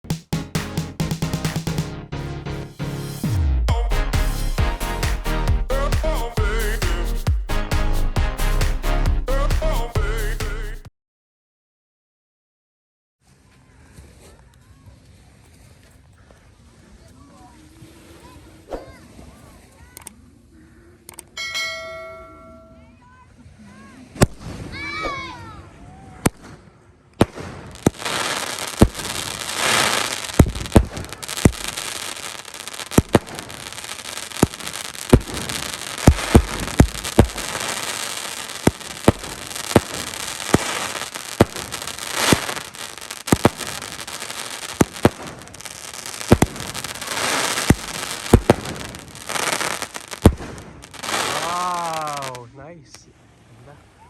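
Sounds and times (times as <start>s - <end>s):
fireworks bangs: 0.0s - 1.9s, 3.2s - 10.8s, 24.1s - 25.6s, 26.2s - 52.5s
fireworks crackling hiss: 3.0s - 10.8s, 27.2s - 53.0s.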